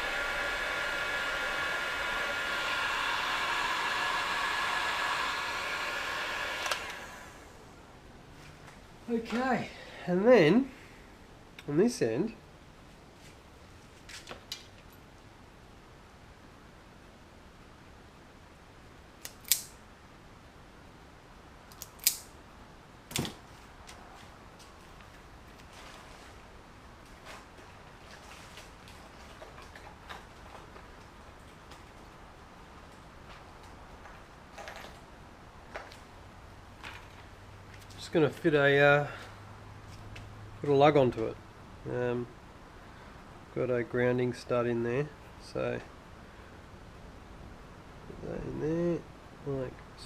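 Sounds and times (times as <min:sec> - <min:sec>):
heat gun blowing: 0:00.0 - 0:07.6
cutting tool snipping wire: 0:19.2 - 0:19.7, 0:21.7 - 0:22.3.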